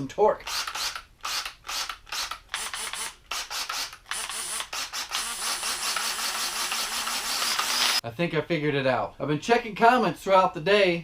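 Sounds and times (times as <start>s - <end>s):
handheld power tool running: 0.5s - 8.0s.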